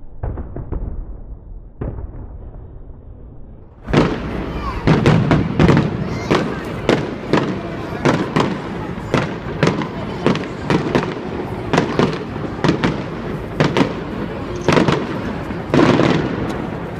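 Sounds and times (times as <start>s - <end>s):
fireworks banging: 0.0s - 16.9s
rumble of firework bursts: 0.0s - 16.9s.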